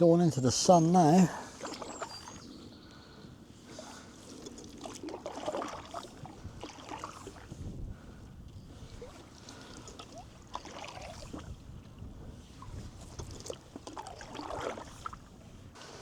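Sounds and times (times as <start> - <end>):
paddle splashing water: 0.0 - 2.8, 3.5 - 16.0
water dripping off paddle: 1.4 - 2.5, 3.9 - 7.5, 8.4 - 15.3.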